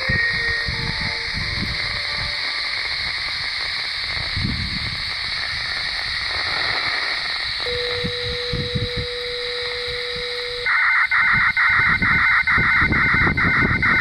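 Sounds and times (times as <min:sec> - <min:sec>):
steady low hum tone: 0:00.0 - 0:06.6, 0:07.6 - 0:10.7
radio static hiss: 0:00.0 - 0:11.4.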